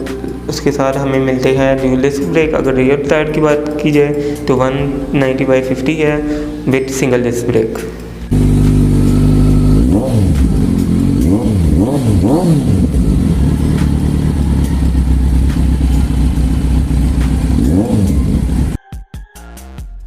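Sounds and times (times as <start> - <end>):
engine revving: 8.2 - 18.8
motorcycle engine idling: 8.3 - 18.8.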